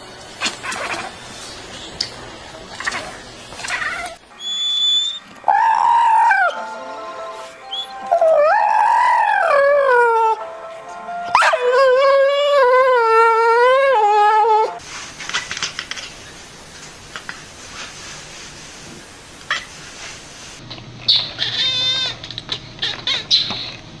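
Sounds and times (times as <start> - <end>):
pet animal howling: 2.8 - 6.7, 7.7 - 10.4, 11.3 - 14.8, 21.2 - 22.2.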